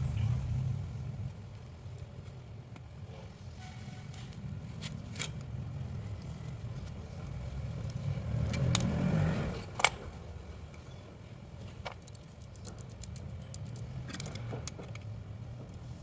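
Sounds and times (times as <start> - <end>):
low steady rumble: 0.0 - 16.0
sharp metallic clicks and clinks: 11.7 - 15.1.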